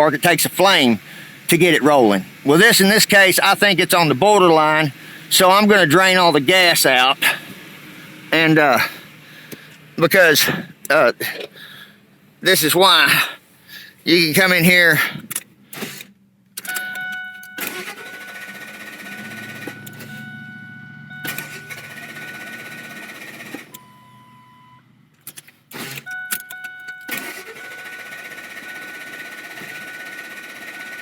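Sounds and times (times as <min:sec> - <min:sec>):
engine cranking on starter: 0:00.0 - 0:31.0
clicks: 0:15.2 - 0:18.1, 0:19.2 - 0:20.3, 0:25.1 - 0:27.4
electronic warning beep: 0:16.7 - 0:24.8, 0:26.1 - 0:31.0.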